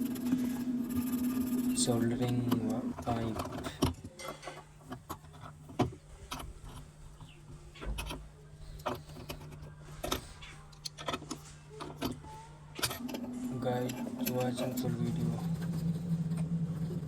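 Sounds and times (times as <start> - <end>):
low hum: 12.8 - 17.0.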